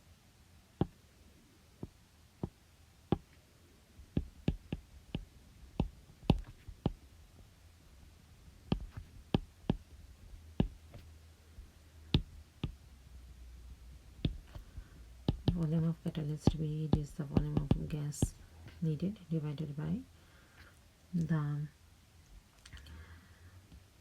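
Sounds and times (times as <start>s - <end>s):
faint low hum: 0.0s - 24.0s
sharp clicks and taps: 4.2s - 5.2s, 5.8s - 7.0s, 8.7s - 9.8s, 10.6s - 11.0s, 12.1s - 12.8s, 14.2s - 14.6s, 15.2s - 18.9s.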